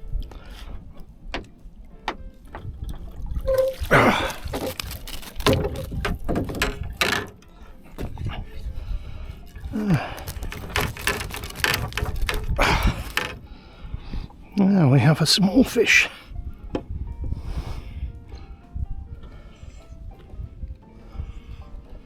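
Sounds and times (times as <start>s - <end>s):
water splashing and gurgling: 2.4s - 13.6s.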